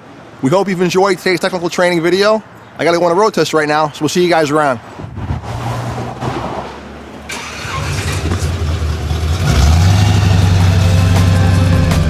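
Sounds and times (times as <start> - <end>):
car engine starting and running: 5.0 - 12.0.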